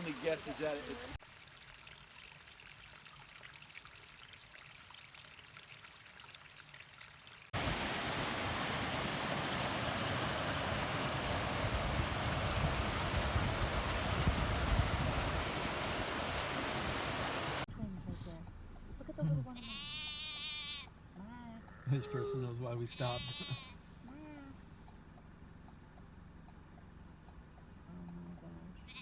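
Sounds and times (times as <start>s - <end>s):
water rushing: 0.0s - 17.7s.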